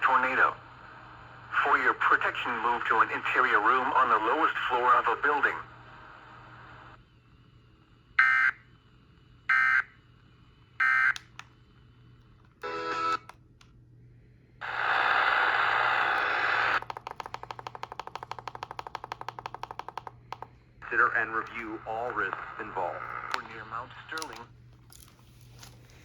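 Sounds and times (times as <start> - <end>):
rapid even clicking: 16.8 - 20.6.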